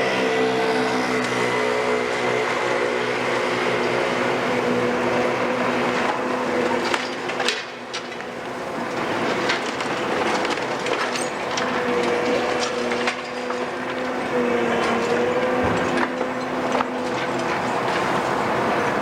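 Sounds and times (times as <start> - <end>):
excavator engine and hydraulics: 0.0 - 19.0
debris cracking and knocking: 6.8 - 18.2.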